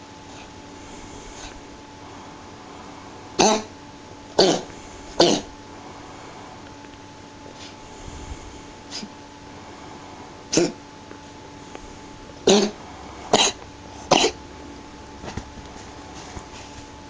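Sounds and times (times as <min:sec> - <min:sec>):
pet coughing: 0:03.3 - 0:05.9, 0:07.6 - 0:09.2, 0:10.4 - 0:10.9, 0:12.3 - 0:16.8.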